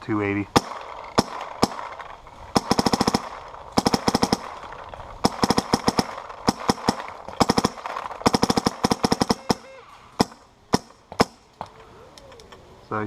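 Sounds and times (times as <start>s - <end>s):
paintball marker rapid shots: 0.6s - 11.4s.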